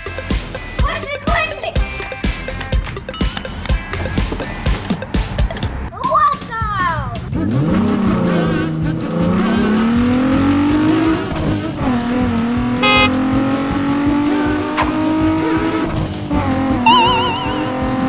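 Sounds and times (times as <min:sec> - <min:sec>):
engine running: 0:07.2 - 0:18.0
short beep tone: 0:12.8 - 0:13.1, 0:16.8 - 0:18.0.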